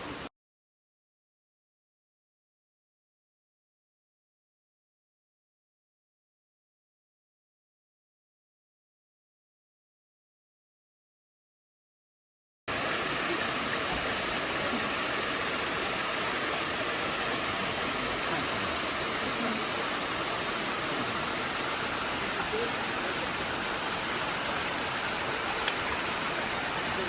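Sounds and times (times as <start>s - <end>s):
waterfall rushing: 0.0s - 0.3s, 12.7s - 27.0s.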